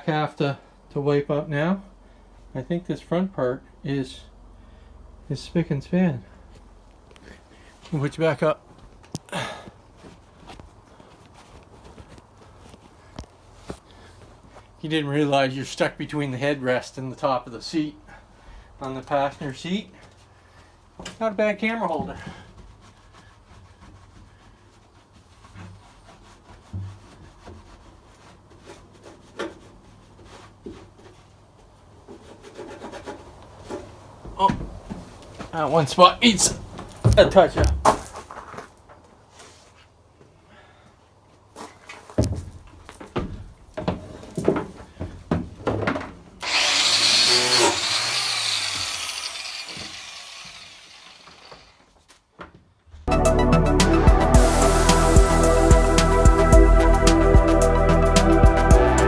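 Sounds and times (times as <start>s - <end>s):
short knocks and bumps: 36.5s - 38.2s
power grinder grinding steel: 46.4s - 51.8s.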